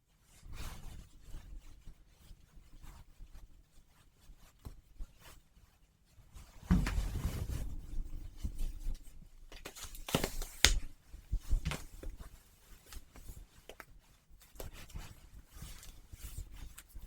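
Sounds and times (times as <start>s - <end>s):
glove snaps and clicks: 10.0s - 10.9s.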